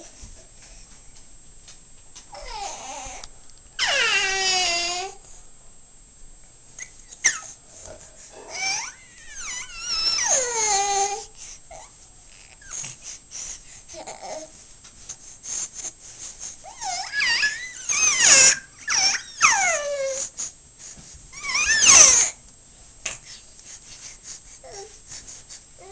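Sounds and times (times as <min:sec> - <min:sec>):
high whining whimpering calls: 0:03.8 - 0:05.2, 0:08.5 - 0:12.9, 0:16.6 - 0:20.4, 0:21.3 - 0:22.4.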